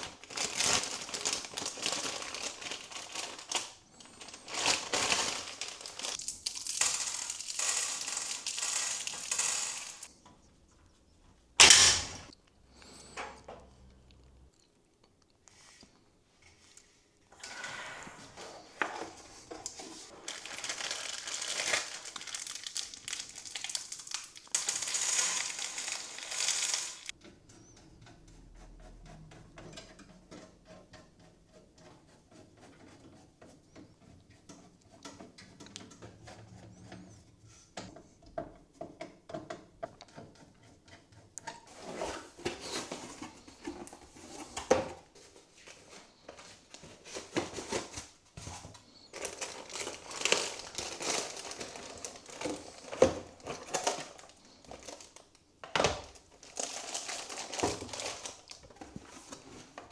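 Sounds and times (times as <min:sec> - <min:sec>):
packaging crinkling and rustling: 0:00.0 - 0:10.1, 0:18.6 - 0:27.2, 0:41.7 - 0:59.9.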